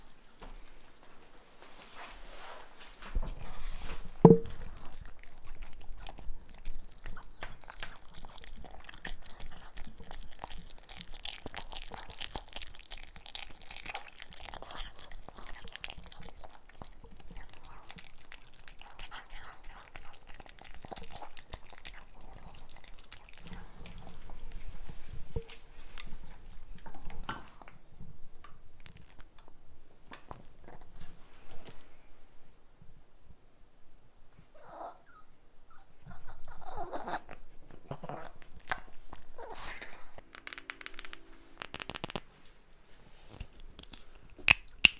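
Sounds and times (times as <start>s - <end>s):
dog chewing wetly: 4.2s - 27.8s.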